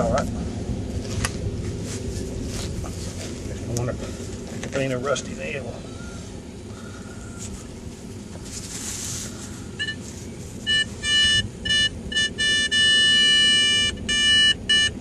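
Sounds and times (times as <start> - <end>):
metal detector beeping: 9.8 - 15.0.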